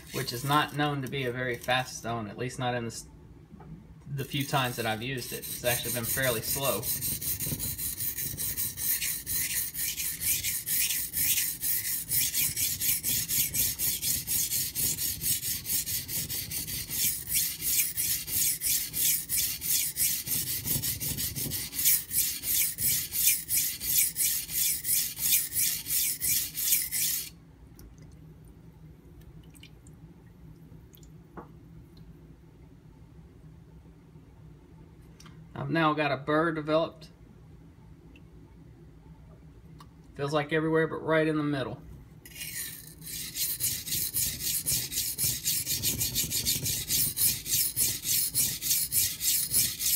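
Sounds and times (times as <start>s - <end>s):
knife scraping on whetstone: 0.0s - 1.8s, 4.2s - 27.4s, 42.3s - 49.9s.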